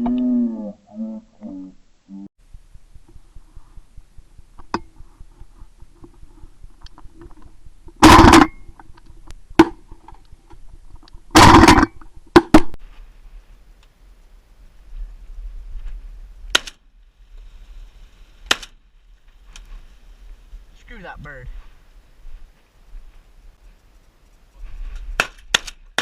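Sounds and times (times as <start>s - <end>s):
shotgun shots: 8.0s - 8.6s, 11.4s - 12.7s.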